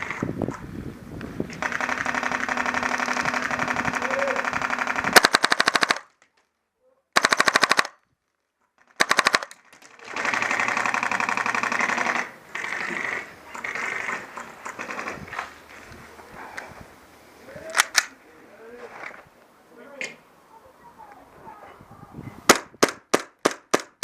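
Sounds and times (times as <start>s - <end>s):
airsoft gun firing bursts: 1.6s - 6.1s, 7.2s - 8.0s, 9.0s - 9.5s, 10.1s - 14.2s, 22.5s - 24.0s.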